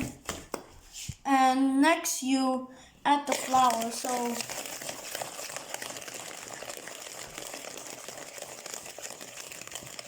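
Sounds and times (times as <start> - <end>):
packaging crinkling and rustling: 3.3 - 10.0.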